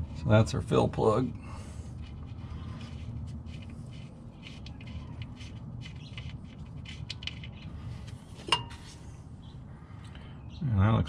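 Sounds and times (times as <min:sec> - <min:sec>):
low steady hum: 0:00.0 - 0:11.0
light scrapes and clicks: 0:01.9 - 0:09.1.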